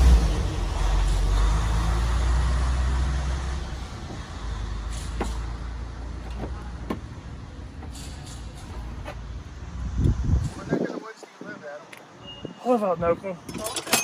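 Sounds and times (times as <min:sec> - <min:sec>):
vehicle engine rumble: 0:00.0 - 0:10.9.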